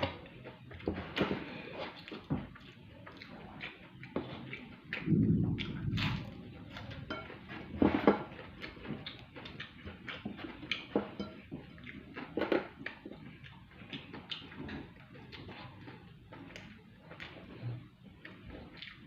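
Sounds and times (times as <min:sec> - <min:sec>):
chewing and mouth sounds: 0:00.0 - 0:19.0
cutlery clinking on a plate: 0:06.8 - 0:08.4, 0:10.8 - 0:12.7.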